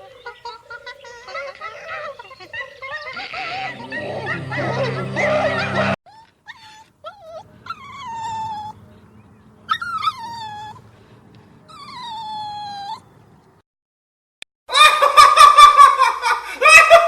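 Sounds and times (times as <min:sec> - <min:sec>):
dog yipping: 0:05.2 - 0:08.8, 0:09.7 - 0:10.8, 0:11.7 - 0:13.1
dog whining: 0:06.1 - 0:08.8, 0:09.7 - 0:10.8, 0:11.7 - 0:13.1.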